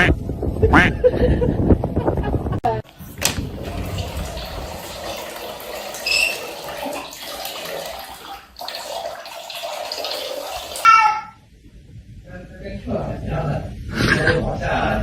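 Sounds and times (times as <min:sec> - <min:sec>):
running water: 0:02.8 - 0:10.9
high-pitched squeak: 0:06.0 - 0:06.5, 0:10.9 - 0:11.4.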